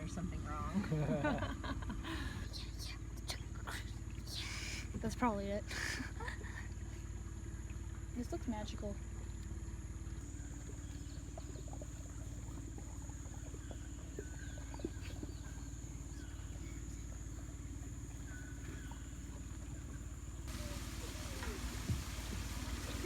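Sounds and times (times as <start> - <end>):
outboard motor running: 0.0 - 23.0
high insect buzz: 20.5 - 23.0
short bird calls: 20.5 - 23.0.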